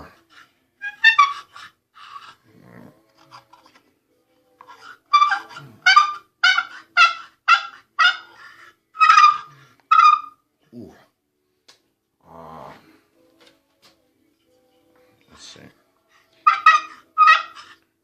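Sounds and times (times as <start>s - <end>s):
wooden turkey call yelps: 0.8s - 2.2s, 4.7s - 10.4s, 16.4s - 17.8s.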